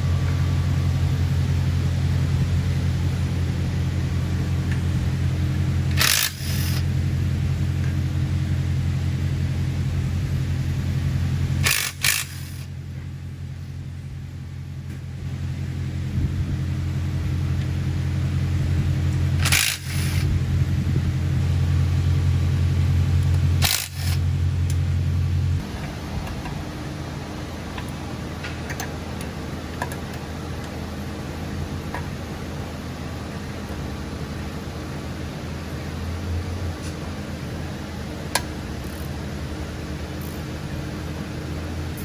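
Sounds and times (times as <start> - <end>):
steady low hum: 0.0 - 42.0
power tool bursts: 5.9 - 6.8, 11.6 - 12.7, 19.4 - 20.3, 23.6 - 24.2.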